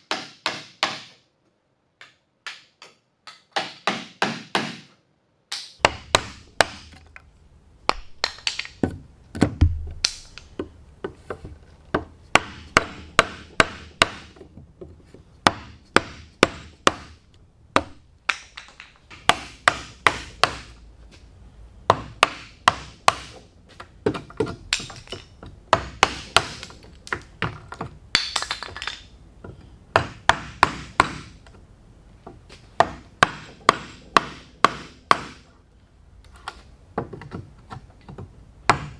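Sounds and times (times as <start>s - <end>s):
mallet knocking on wood: 5.8s - 7.0s, 11.9s - 14.4s, 32.8s - 35.4s.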